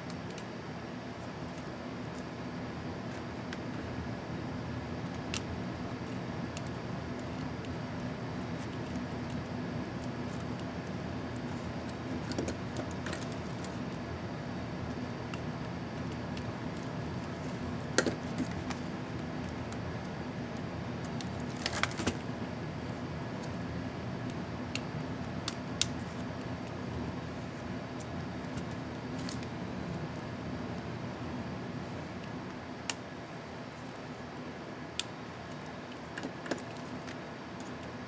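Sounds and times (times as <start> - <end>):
steady background hum: 0.0 - 38.0
clicks of plastic keyboard parts: 35.0 - 37.9.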